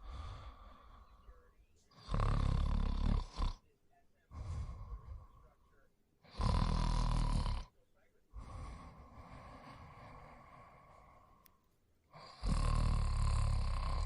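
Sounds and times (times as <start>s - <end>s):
person snoring: 0.0s - 1.3s, 1.9s - 3.6s, 4.3s - 5.6s, 6.2s - 7.7s, 8.3s - 11.5s, 12.1s - 14.0s.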